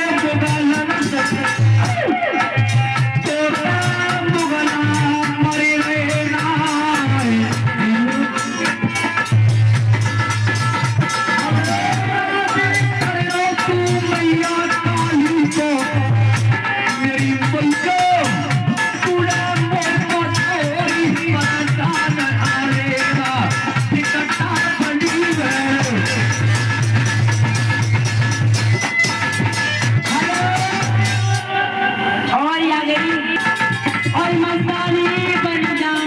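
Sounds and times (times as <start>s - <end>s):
quick drum beat: 0.0s - 31.6s.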